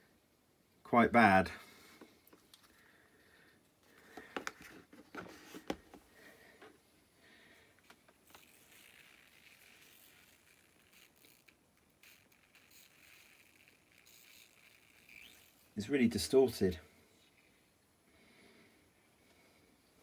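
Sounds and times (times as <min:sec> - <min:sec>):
handling clicks and rustles: 0:03.8 - 0:06.8.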